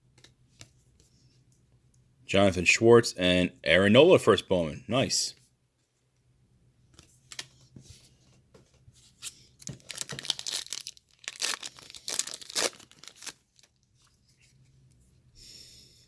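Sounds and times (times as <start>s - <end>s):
wrapper tearing and crinkling: 9.6s - 13.8s.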